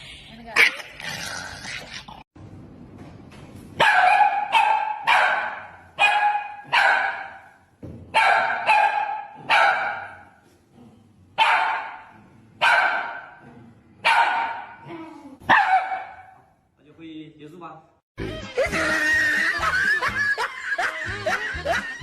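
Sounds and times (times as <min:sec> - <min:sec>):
dog barking: 0:03.8 - 0:10.4, 0:11.4 - 0:13.4, 0:14.0 - 0:14.8, 0:15.5 - 0:16.5.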